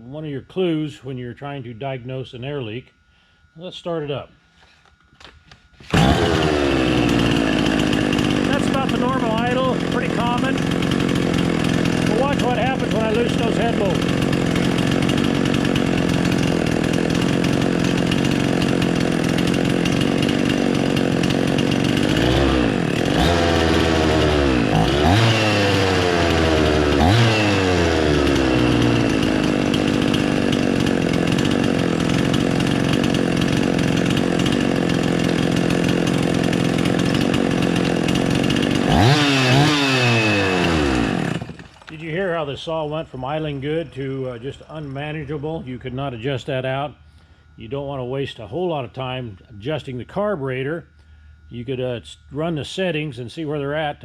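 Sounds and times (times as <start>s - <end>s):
chainsaw engine idling and surging: 5.7s - 54.0s.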